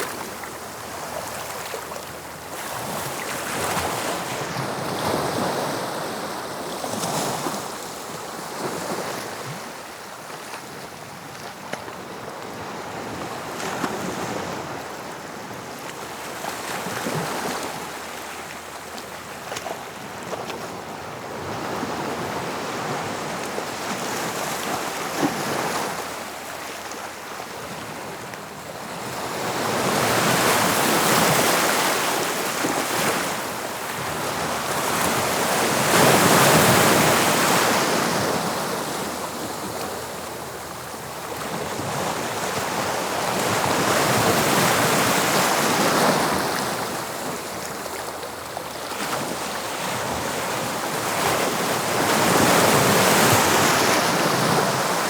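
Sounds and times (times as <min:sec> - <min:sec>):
sea waves breaking on shore: 0:12.7 - 0:55.0.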